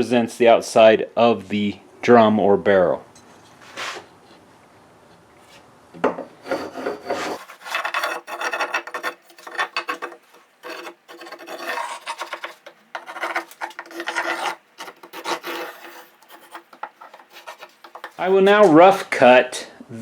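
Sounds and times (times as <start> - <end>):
pencil scratching across plywood: 6.4 - 19.1.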